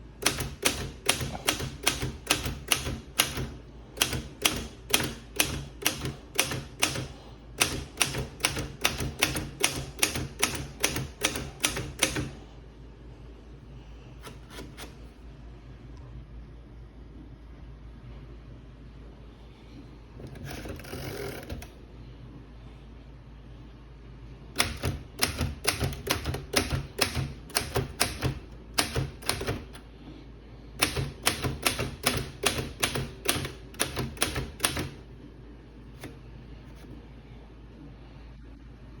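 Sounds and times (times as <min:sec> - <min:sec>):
typewriter key strikes: 0:00.2 - 0:12.4, 0:24.6 - 0:29.8, 0:30.8 - 0:35.0
typewriter rasping: 0:00.2 - 0:12.4, 0:14.2 - 0:15.0, 0:20.3 - 0:21.8, 0:24.6 - 0:29.8, 0:30.8 - 0:35.0.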